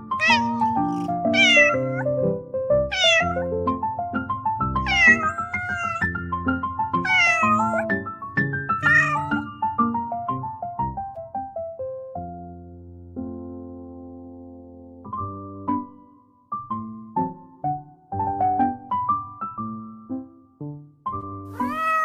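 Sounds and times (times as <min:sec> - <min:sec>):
kitten meowing: 0:00.1 - 0:02.2, 0:02.9 - 0:03.6, 0:04.8 - 0:06.1, 0:07.0 - 0:07.9, 0:08.8 - 0:09.5, 0:21.5 - 0:22.0.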